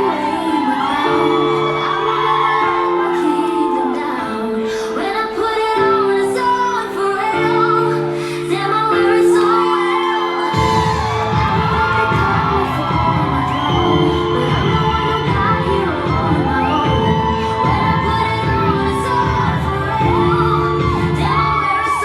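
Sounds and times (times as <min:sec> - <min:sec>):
pop music with woman singing: 0:00.0 - 0:22.0
heavy low beat: 0:10.6 - 0:21.3.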